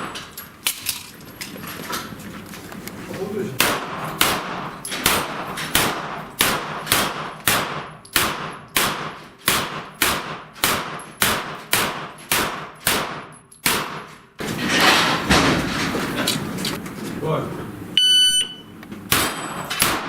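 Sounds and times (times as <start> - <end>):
pistol shots echoing: 3.6 - 14.2, 19.1 - 20.0.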